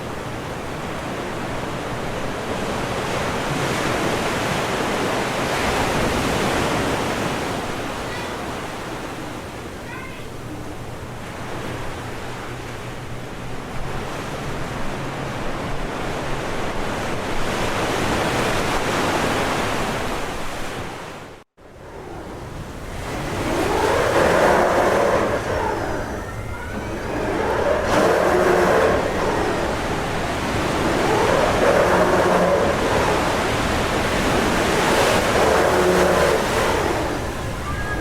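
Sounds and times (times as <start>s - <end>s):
outdoor city ambience: 7.8s - 18.0s.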